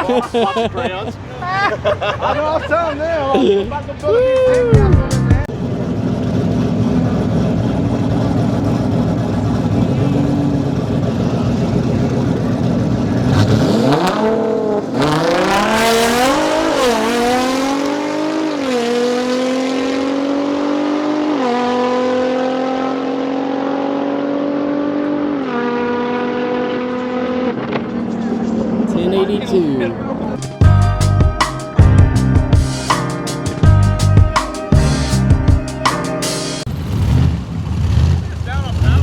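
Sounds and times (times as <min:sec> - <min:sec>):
drag car engine accelerating: 0:05.4 - 0:29.0, 0:34.8 - 0:39.0.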